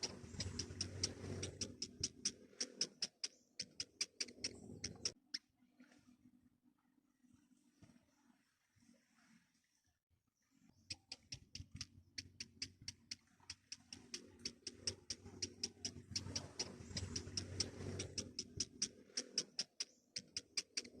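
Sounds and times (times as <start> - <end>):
nestling birds peeping: 0.0 - 5.2, 10.8 - 21.0.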